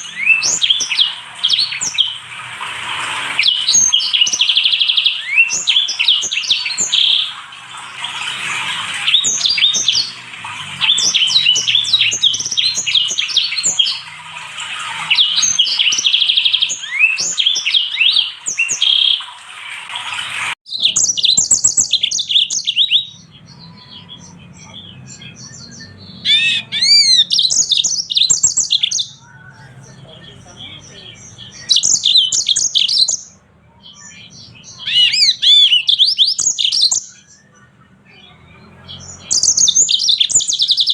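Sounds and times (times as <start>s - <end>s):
finches twittering: 0.0s - 19.3s, 20.7s - 40.9s
bird chips and slurred whistles: 3.0s - 10.2s, 10.8s - 19.3s, 20.7s - 23.1s, 31.6s - 33.4s, 34.8s - 37.3s, 39.3s - 40.9s.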